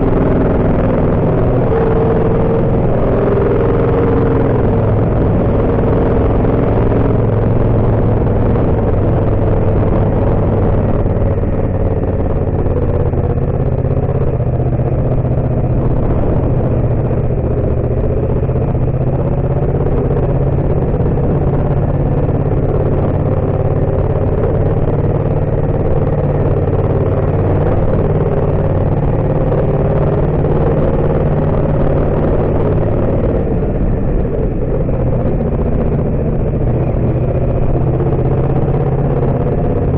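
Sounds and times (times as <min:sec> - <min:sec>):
motorcycle engine at low revs: 0:00.0 - 0:39.9.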